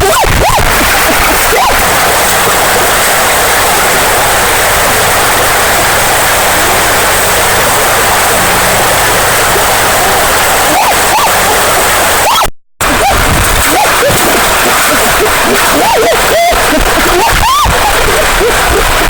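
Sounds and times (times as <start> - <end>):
short pitched sounds: 0.0 - 18.7
river water rushing: 0.0 - 19.0.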